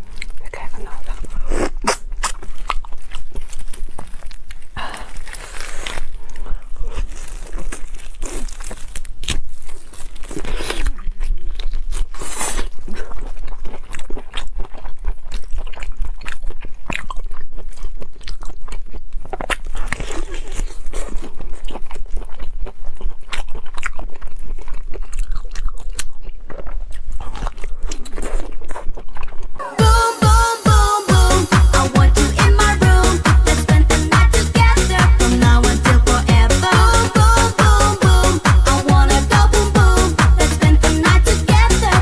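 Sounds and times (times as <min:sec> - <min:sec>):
person chewing crunchy food: 0:00.0 - 0:30.2, 0:31.1 - 0:42.0
low hum: 0:29.6 - 0:42.0.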